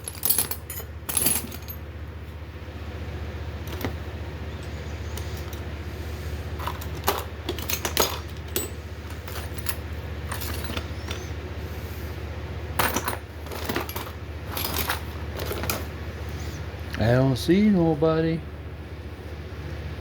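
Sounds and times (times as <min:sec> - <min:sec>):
metal parts clinking and knocking: 0:00.0 - 0:01.8, 0:03.6 - 0:04.0, 0:06.6 - 0:11.3, 0:12.8 - 0:15.9
steady low hum: 0:00.0 - 0:20.0.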